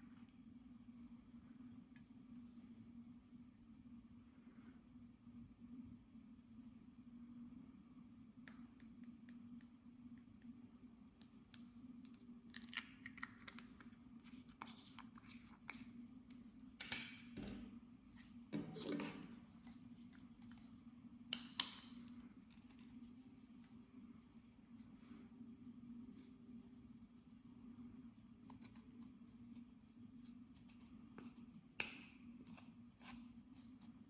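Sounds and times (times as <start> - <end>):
faint hum: 0.0 - 34.0
light clicks taps and scrapes: 11.2 - 17.6, 28.4 - 29.7.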